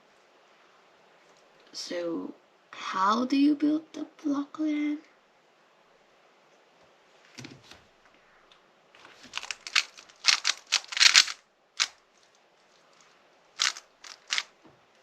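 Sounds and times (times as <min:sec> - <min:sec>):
puzzle cube turns clicking: 0:09.3 - 0:12.0, 0:13.6 - 0:14.5.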